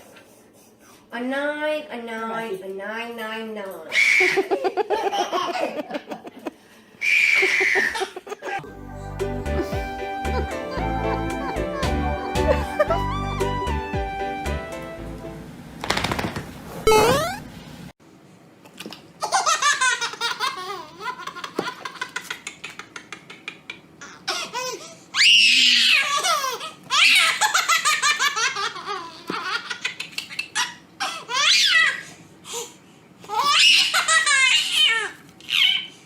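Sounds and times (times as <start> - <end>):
baby laughing: 7.3 - 8.6, 9.5 - 13.5, 18.8 - 25.0, 25.8 - 32.0, 33.3 - 35.9.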